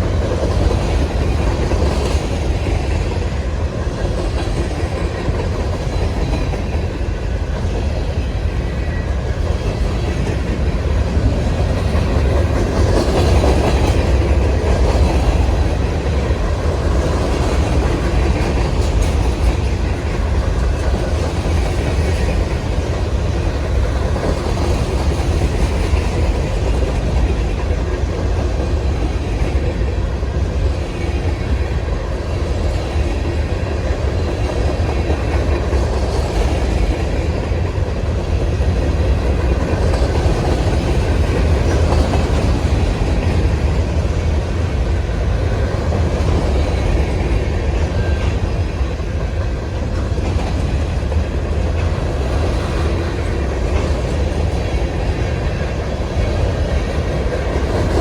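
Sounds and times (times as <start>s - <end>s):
freight train rumbling past: 0.0s - 58.0s.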